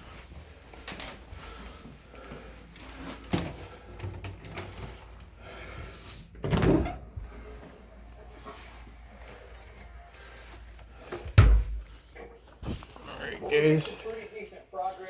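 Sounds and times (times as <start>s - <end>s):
knocks of objects being handled: 11.1s - 12.0s.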